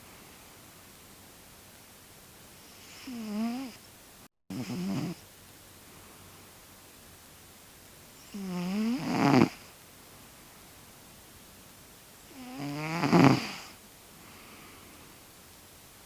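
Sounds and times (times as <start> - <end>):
cat snoring: 2.6 - 3.8, 4.5 - 5.2, 8.2 - 9.7, 12.3 - 13.8.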